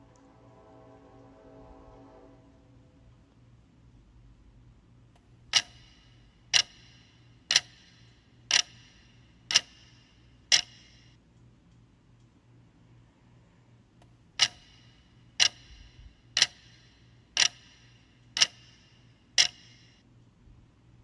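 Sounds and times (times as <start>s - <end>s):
faint low hum: 0.0s - 21.0s
sharp ringing ticks: 5.5s - 12.4s, 14.4s - 20.0s.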